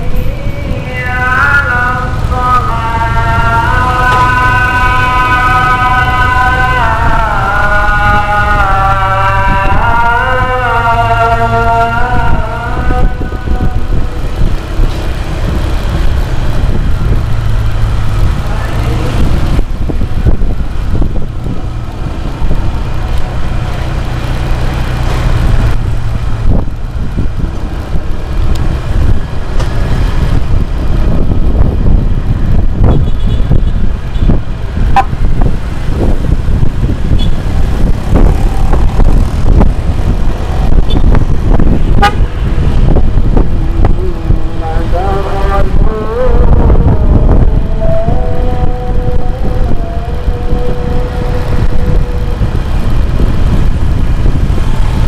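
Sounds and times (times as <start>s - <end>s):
engine and road noise rumble: 0.0s - 55.0s
vehicle horns tooting: 32.8s - 35.2s, 37.1s - 37.5s, 40.7s - 42.8s.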